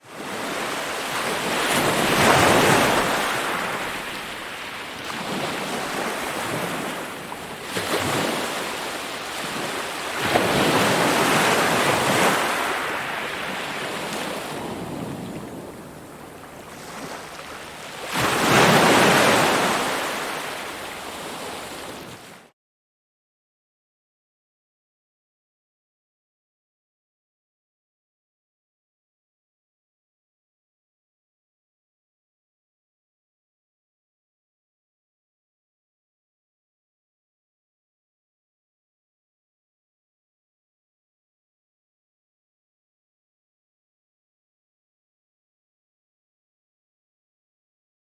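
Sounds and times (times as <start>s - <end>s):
ocean waves breaking: 0.0s - 22.5s.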